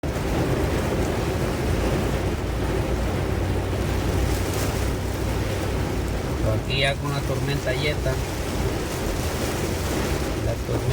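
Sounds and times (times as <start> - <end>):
wind buffeting microphone: 7.9 - 10.9.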